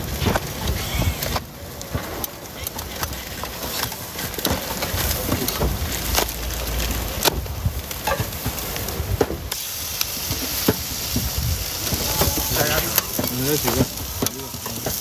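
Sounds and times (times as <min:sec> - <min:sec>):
food sizzling and frying: 0:00.0 - 0:15.0.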